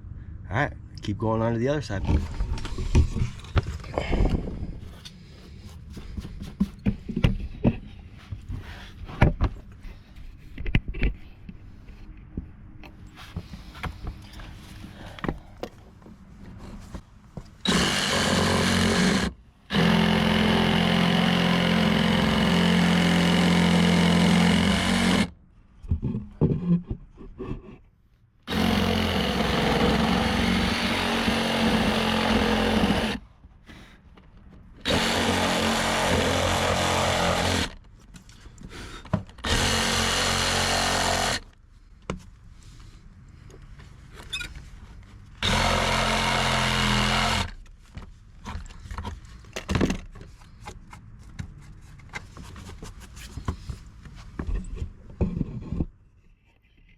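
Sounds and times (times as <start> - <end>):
reciprocating saw cutting wood: 17.6 - 25.3, 28.5 - 33.2, 34.8 - 37.8, 39.4 - 41.5, 45.4 - 47.6.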